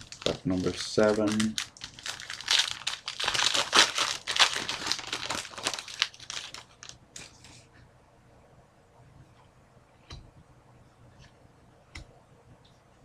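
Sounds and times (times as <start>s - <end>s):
plastic wrapper crinkling: 0.0s - 7.4s.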